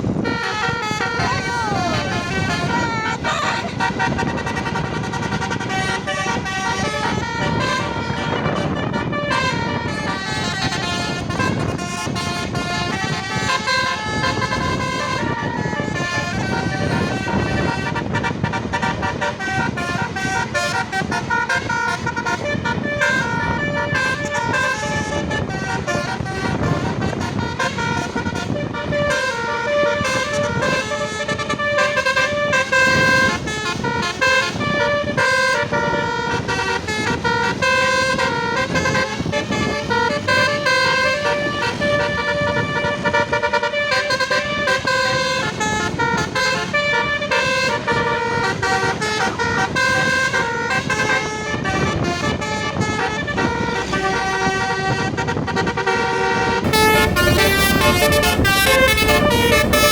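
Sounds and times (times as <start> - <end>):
street noise: 0.0 - 59.9
musical air horn melody: 0.2 - 59.9
engine rumble: 56.6 - 59.9.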